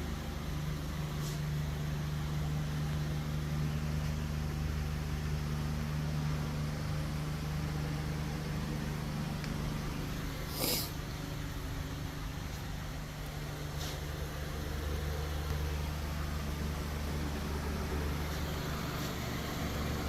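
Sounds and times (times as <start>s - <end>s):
low machine hum: 0.0s - 20.0s
short hiss of air: 10.5s - 11.0s.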